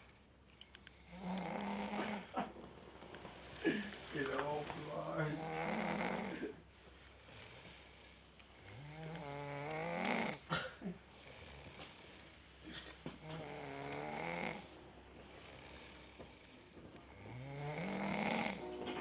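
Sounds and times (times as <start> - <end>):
person snoring: 1.0 - 2.3, 4.9 - 6.5, 7.3 - 10.4, 13.2 - 18.8.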